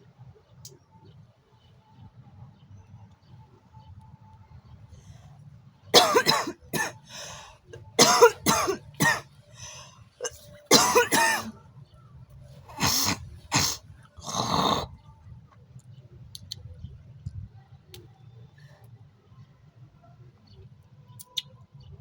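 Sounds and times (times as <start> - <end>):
woman coughing: 5.9 - 7.3, 8.0 - 11.6, 12.7 - 14.4
woman clearing her throat: 6.0 - 7.0, 8.0 - 9.2, 10.2 - 11.5, 12.7 - 14.9.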